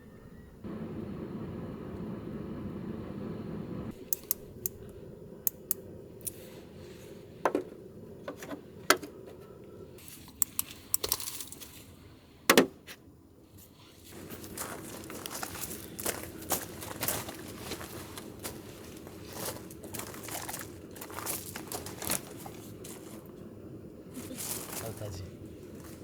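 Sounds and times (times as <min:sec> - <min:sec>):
low hum: 0:00.0 - 0:10.0
small hard objects clicking: 0:10.3 - 0:11.7.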